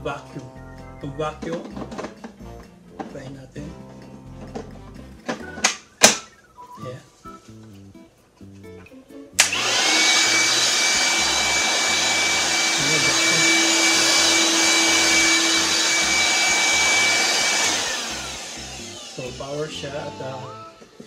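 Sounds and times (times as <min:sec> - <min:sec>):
vacuum switch click: 0:09.4 - 0:09.7
vacuum motor whining: 0:09.4 - 0:21.0.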